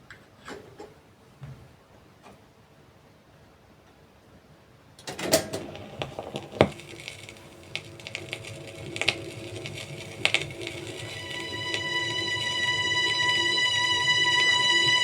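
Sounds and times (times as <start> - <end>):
vinyl record crackling and popping: 5.0 - 15.0
low hum: 7.6 - 15.0.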